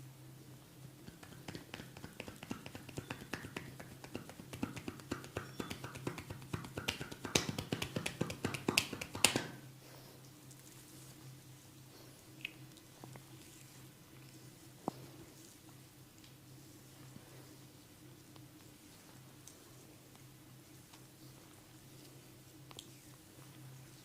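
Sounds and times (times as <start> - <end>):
faint steady hum: 0.0 - 24.0
hands tapping on head: 1.0 - 9.6.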